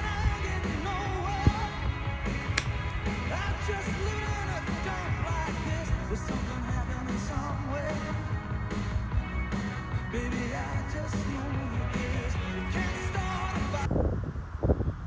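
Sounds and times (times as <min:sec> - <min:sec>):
rock and roll song with singer: 0:00.0 - 0:13.9
sharp click: 0:02.6 - 0:03.0.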